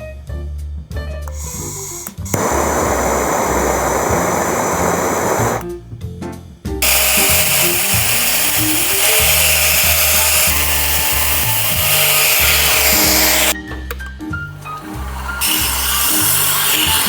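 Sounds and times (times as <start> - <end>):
grinding wheel hissing on metal: 1.3 - 5.7, 6.8 - 13.6, 14.6 - 17.0.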